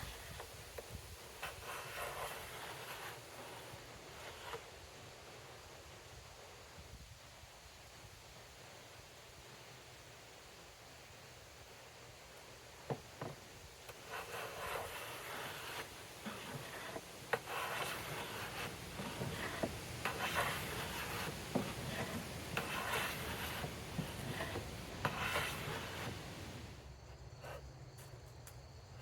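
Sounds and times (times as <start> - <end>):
scraping and rubbing on wood: 0.0 - 4.7, 12.9 - 26.8.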